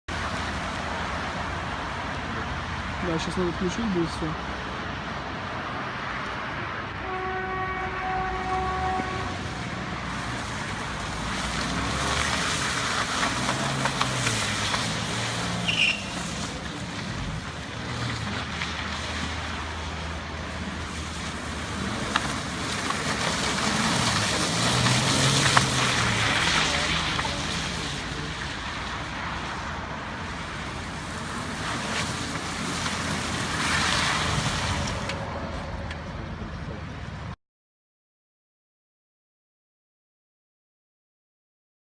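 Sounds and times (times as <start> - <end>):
tyres hissing on wet road: 0.1 - 35.8
low car engine hum: 7.6 - 37.3
car engine revving: 20.6 - 28.4.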